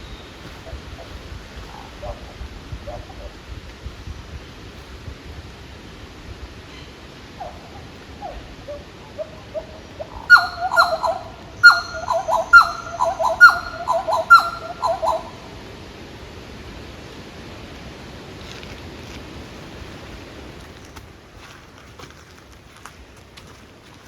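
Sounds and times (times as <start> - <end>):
bird calling: 0.0 - 3.4, 6.7 - 15.6
bird whistling down-sweeping notes: 10.2 - 15.3.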